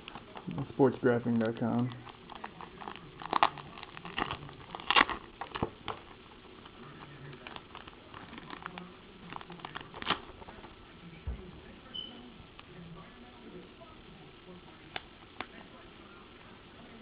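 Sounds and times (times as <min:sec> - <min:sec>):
package crinkling and rustling: 0:00.0 - 0:10.8.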